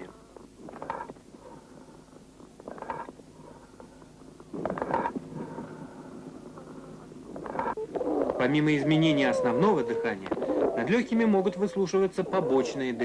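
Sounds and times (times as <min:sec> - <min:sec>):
hollow ringing breath sounds: 0:01.3 - 0:07.7.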